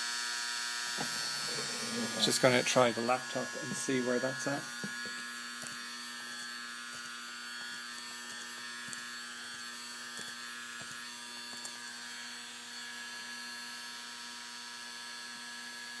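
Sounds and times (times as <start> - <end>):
hard disk drive spinning: 0.9 - 5.9.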